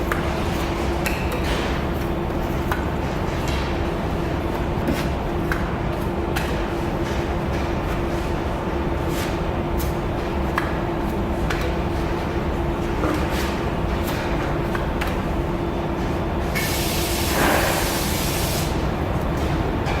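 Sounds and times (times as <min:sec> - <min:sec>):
spray hiss: 0:16.6 - 0:18.7.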